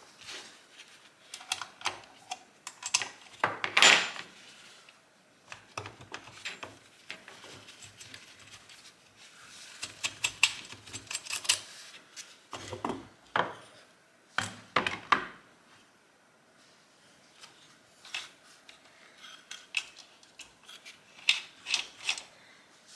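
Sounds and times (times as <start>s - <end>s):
metallic clicks and scraping of tools: 1.3s - 3.4s, 9.7s - 11.8s, 17.4s - 22.3s.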